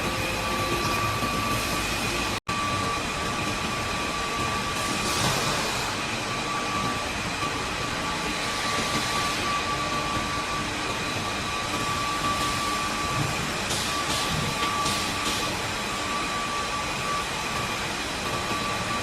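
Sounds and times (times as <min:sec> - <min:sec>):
factory machinery running: 0:00.0 - 0:19.0.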